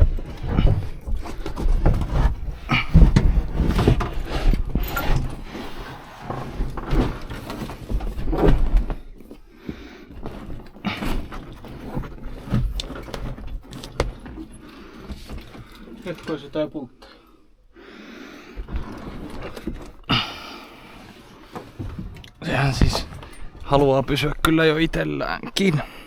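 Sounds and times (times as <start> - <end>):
bumps and knocks of trim panels: 0.0 - 5.6, 21.5 - 24.0.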